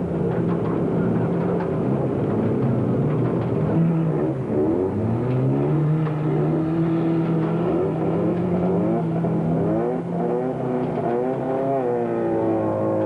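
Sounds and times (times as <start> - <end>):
race car engines revving: 0.0 - 13.0
steady engine drone: 0.0 - 13.0.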